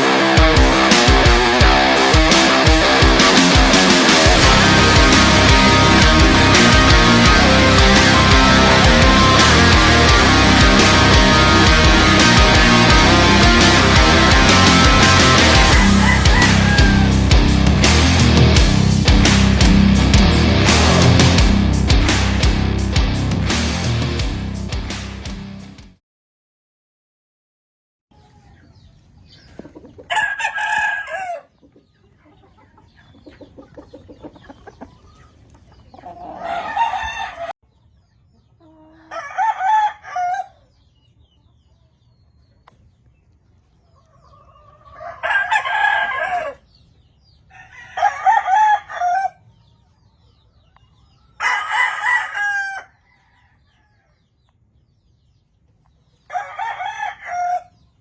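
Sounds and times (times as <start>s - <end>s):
roosters crowing: 0.0s - 21.6s, 28.2s - 37.6s, 38.6s - 40.9s, 44.0s - 46.8s, 47.4s - 49.6s, 51.2s - 54.4s, 56.2s - 58.0s
soft clucking: 28.2s - 30.1s, 31.5s - 37.2s.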